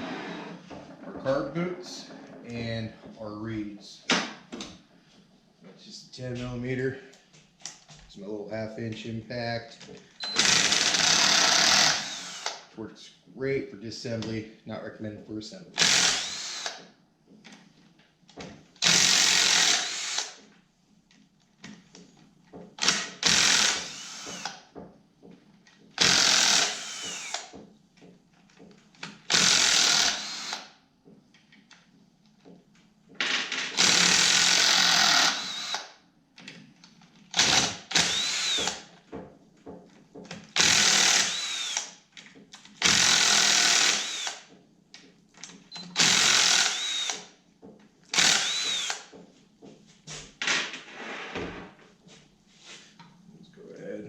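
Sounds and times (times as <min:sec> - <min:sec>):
air impact wrench whine: 0:22.8 - 0:24.6, 0:26.0 - 0:27.6, 0:29.3 - 0:30.7, 0:42.8 - 0:44.5, 0:48.1 - 0:49.2.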